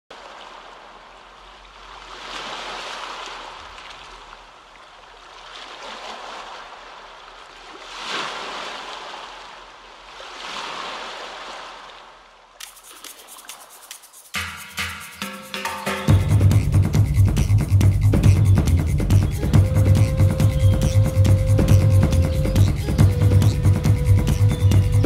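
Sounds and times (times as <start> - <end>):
waves washing on a shore: 0.1 - 14.4.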